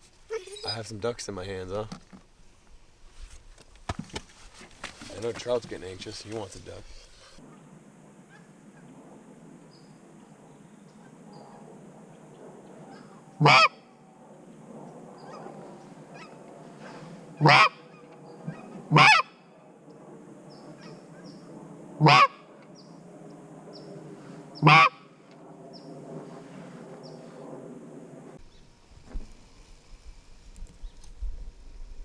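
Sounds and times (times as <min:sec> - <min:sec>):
goose-like honks: 0:13.4 - 0:13.8, 0:17.4 - 0:17.8, 0:18.9 - 0:19.3, 0:22.0 - 0:22.4, 0:24.6 - 0:25.0.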